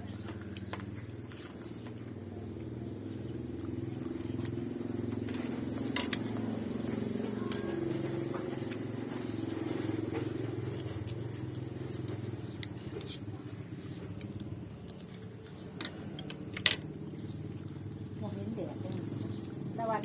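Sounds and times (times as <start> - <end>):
steady low hum: 0.0 - 20.0
tableware clinking: 12.4 - 13.4.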